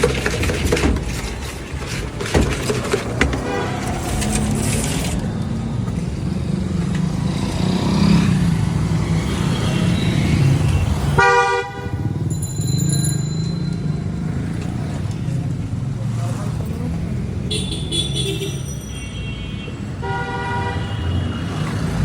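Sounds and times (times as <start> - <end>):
roadside traffic: 0.0 - 22.0
vehicle horn honking: 11.1 - 12.2, 17.5 - 21.2
high ringing tone: 12.2 - 14.1.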